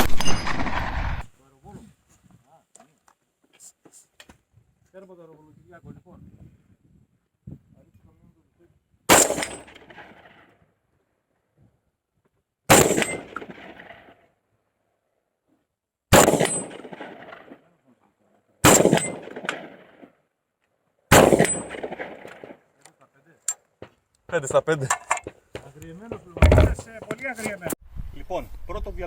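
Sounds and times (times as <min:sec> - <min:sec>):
shotgun shots: 0:00.0 - 0:01.3, 0:09.1 - 0:10.3, 0:12.7 - 0:14.1, 0:16.1 - 0:17.6, 0:18.6 - 0:20.0, 0:21.1 - 0:22.6.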